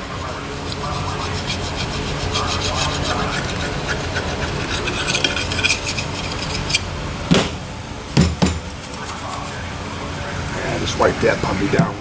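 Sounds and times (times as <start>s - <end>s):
loud metal knocks: 7.3s - 7.6s, 8.2s - 8.7s.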